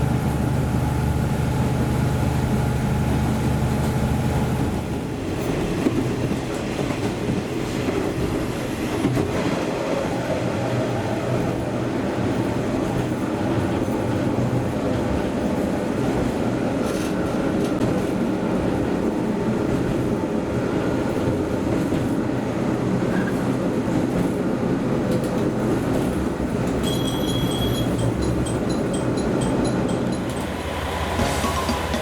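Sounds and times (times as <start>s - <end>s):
train wheels rumbling on rails: 0.0s - 32.0s
high steady tones: 28.1s - 32.0s.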